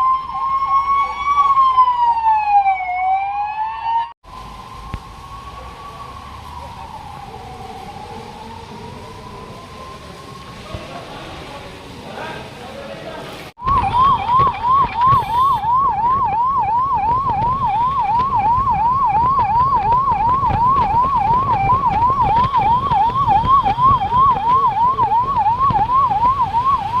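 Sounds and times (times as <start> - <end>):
electronic siren yelping: 0.0 - 8.0, 13.6 - 27.0.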